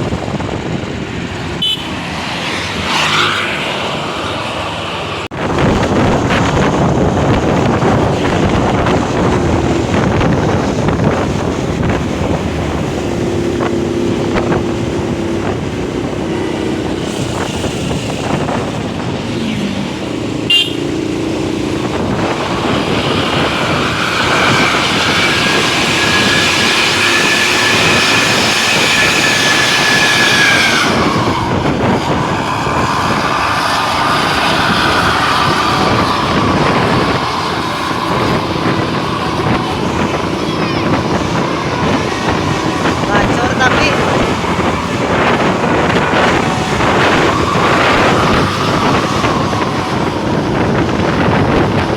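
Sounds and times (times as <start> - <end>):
road traffic noise: 0.0 - 51.9
bus air horn chord: 1.6 - 1.9, 20.5 - 20.8.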